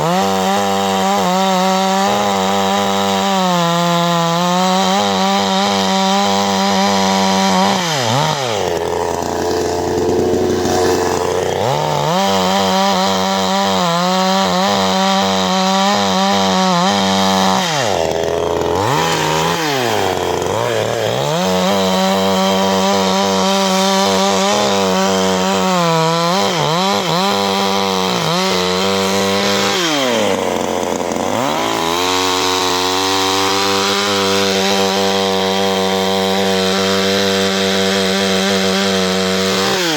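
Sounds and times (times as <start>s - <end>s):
chainsaw running at high revs: 0.0s - 39.9s.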